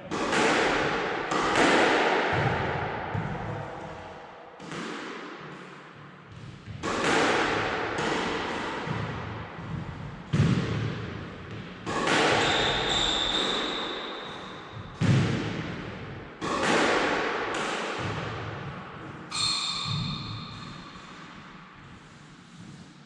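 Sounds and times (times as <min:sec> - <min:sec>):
squash ball hits echoing: 0:00.0 - 0:21.7
brief high squeal: 0:19.3 - 0:20.1.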